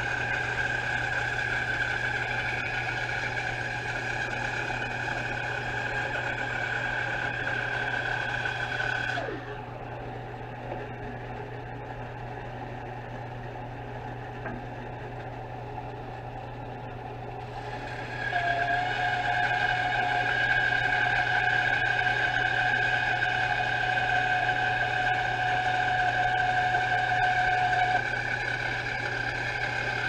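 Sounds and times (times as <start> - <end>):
electric power saw whine: 0.0 - 11.5, 17.3 - 30.0
low machine hum: 0.0 - 30.0.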